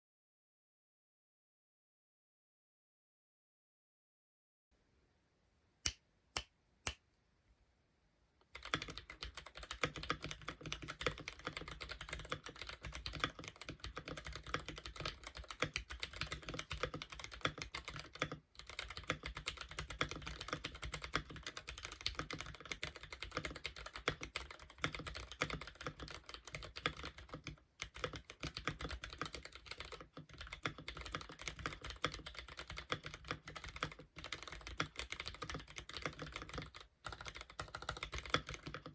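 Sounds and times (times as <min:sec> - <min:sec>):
mechanical keyboard typing: 0:08.5 - 0:38.9.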